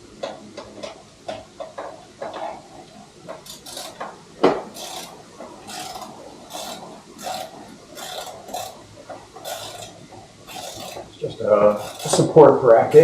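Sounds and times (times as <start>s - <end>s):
ratchet wrench rasping: 3.4s - 4.1s, 4.7s - 8.8s, 9.4s - 12.3s.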